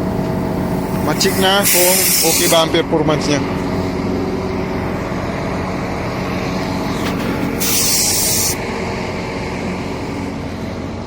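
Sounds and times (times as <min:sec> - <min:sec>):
hydraulic pump and truck engine humming: 0:00.0 - 0:11.0
loud hissing air burst: 0:00.7 - 0:02.7, 0:07.5 - 0:08.6.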